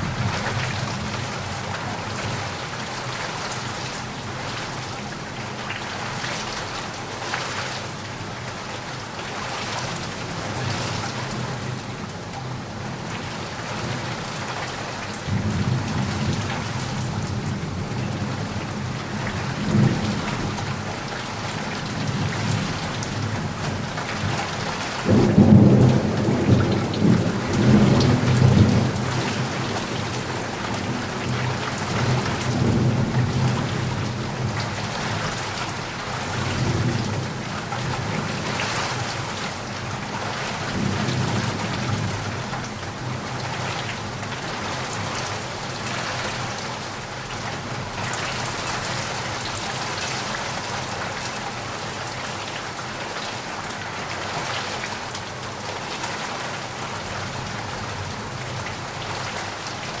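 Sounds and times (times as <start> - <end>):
heavy rain falling: 0.0 - 60.0.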